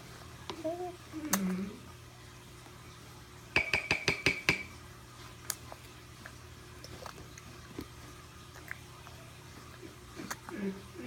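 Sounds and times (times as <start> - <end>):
sharp ringing clicks: 3.6 - 4.7.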